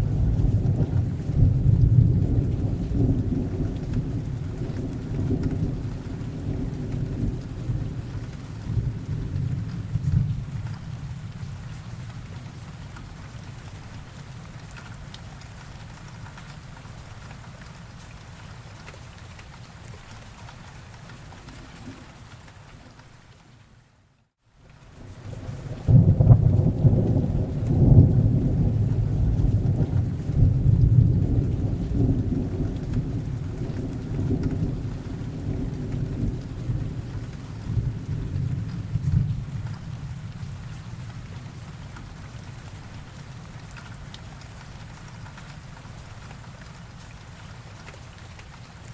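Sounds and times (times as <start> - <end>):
low thunder rumble: 0.0 - 11.8, 25.2 - 41.6
steady rainfall: 0.0 - 48.9
raindrop ticks: 0.1 - 23.6, 24.6 - 48.9.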